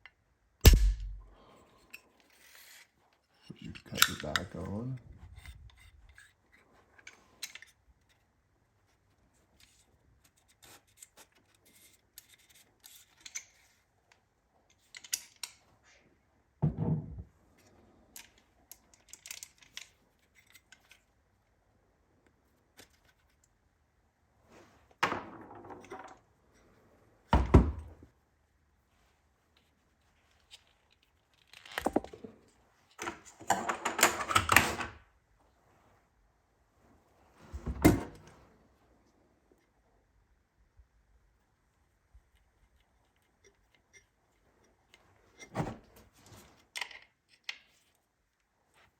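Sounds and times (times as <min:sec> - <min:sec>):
loud thumps: 0:00.6 - 0:01.4
clicks and scrapes of sander handling: 0:00.7 - 0:08.2.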